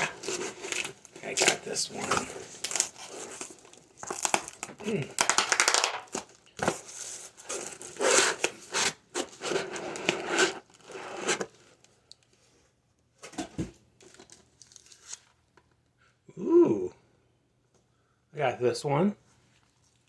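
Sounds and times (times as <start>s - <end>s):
packaging tearing and crinkling: 0.0s - 11.5s, 14.0s - 15.4s.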